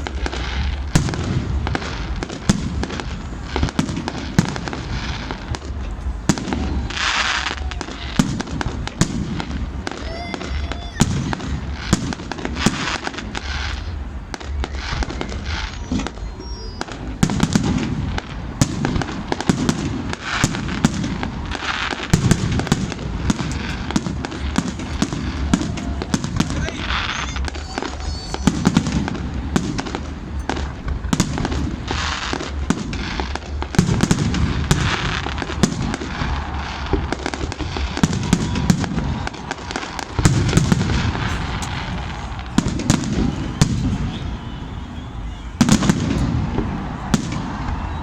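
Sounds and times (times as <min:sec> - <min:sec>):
fireworks bangs and pops: 0:00.0 - 0:48.0
fireworks hissing crackle: 0:00.0 - 0:48.0.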